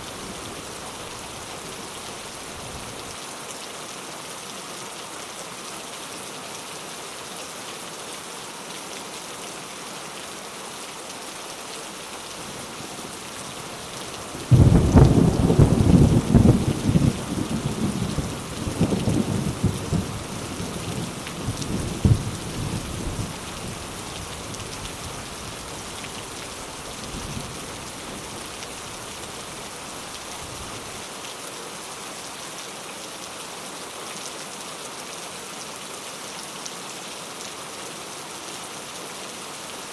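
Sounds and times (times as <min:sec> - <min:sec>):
steady rain: 0:00.0 - 0:39.9
thunderclap rumbling: 0:14.4 - 0:20.3.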